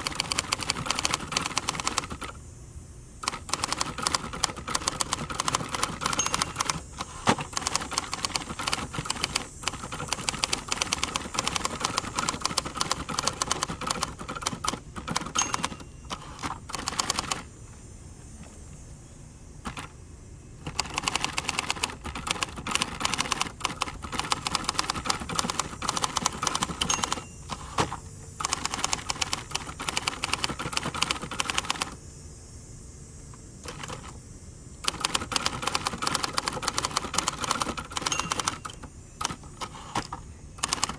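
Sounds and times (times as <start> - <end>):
manual typewriter typing: 0.0 - 2.4, 3.2 - 17.6, 19.6 - 19.9, 20.6 - 32.0, 33.6 - 34.2, 34.8 - 40.9.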